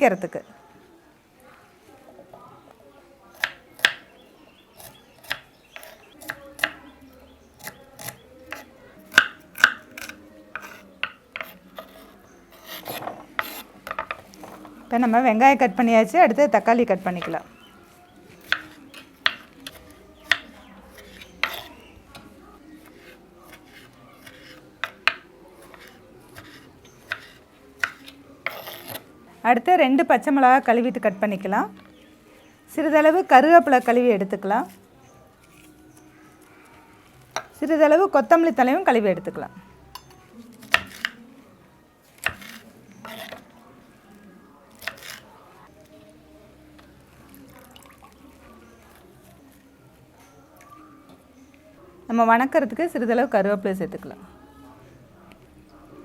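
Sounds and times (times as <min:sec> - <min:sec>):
knife cutting on chopping board: 0:11.4 - 0:14.6, 0:18.4 - 0:29.1, 0:40.6 - 0:41.2, 0:42.2 - 0:43.5, 0:44.7 - 0:45.3.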